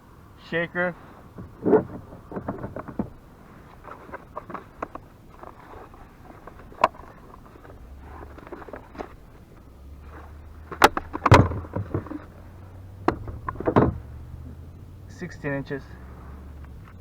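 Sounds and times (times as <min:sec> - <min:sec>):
knocks on plastic kayak: 0:10.7 - 0:12.3, 0:13.0 - 0:14.1.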